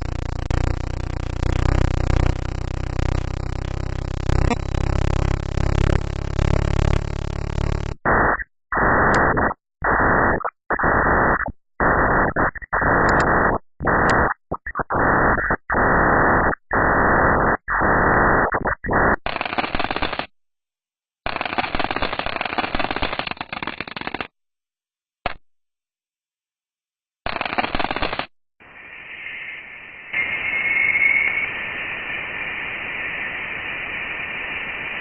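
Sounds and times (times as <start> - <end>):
static-like radio hiss: 0.0 - 19.2, 28.6 - 35.0.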